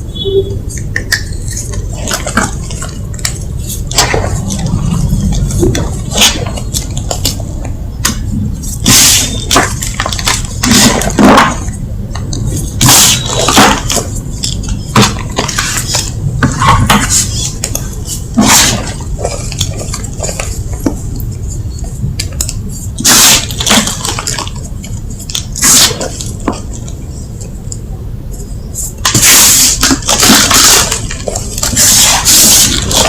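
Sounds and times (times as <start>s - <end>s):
chalk crunching: 28.8s - 33.0s.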